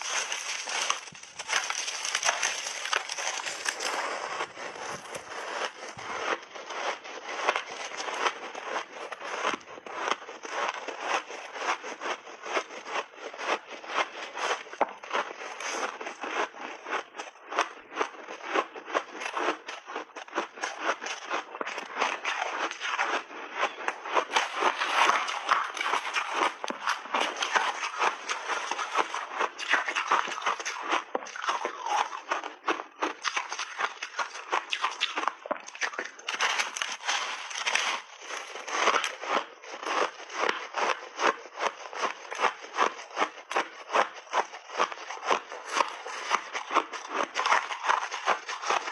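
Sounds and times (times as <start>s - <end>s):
crunching frozen berries and ice: 0.0s - 48.9s.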